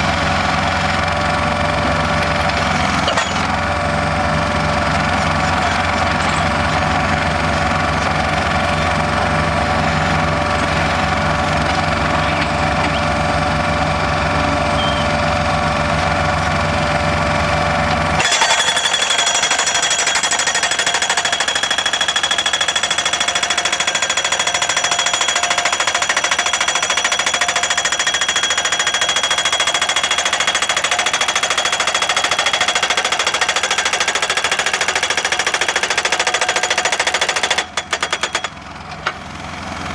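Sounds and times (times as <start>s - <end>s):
pile driver hammer pounding: 17.9s - 39.2s.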